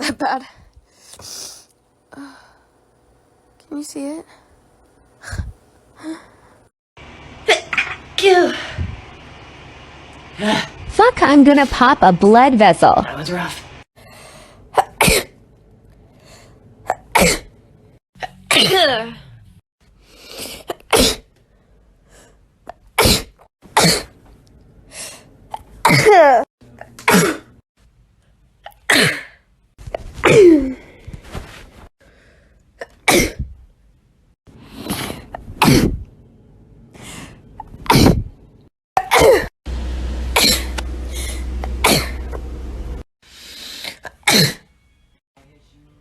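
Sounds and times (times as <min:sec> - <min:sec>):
person sneezing: 0:34.7 - 0:36.0, 0:37.8 - 0:38.3, 0:43.8 - 0:44.7
low steady hum: 0:39.7 - 0:43.0.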